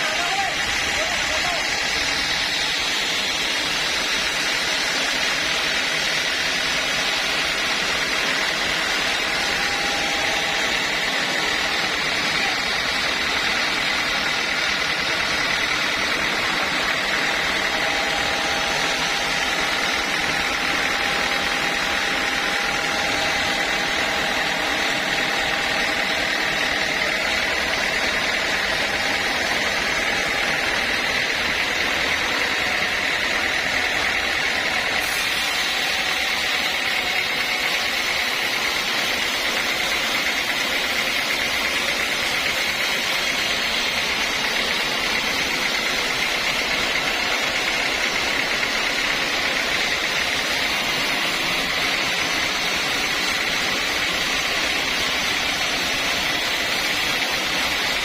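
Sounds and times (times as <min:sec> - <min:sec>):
sawmill machinery running: 0:00.0 - 0:58.0.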